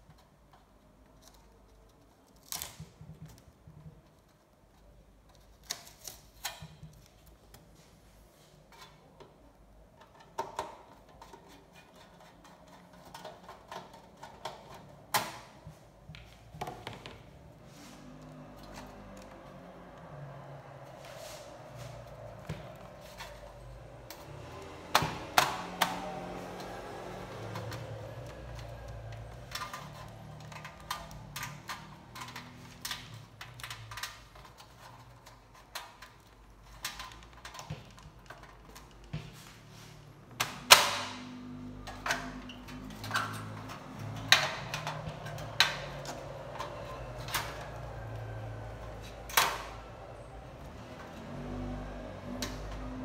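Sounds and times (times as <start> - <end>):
metal and plastic parts clicking: 22.4 - 39.1.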